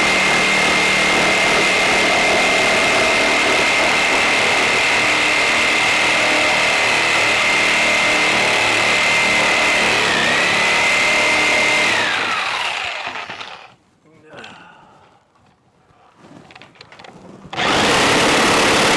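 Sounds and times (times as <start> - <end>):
electric saw whining: 0.0 - 13.7, 17.6 - 18.9.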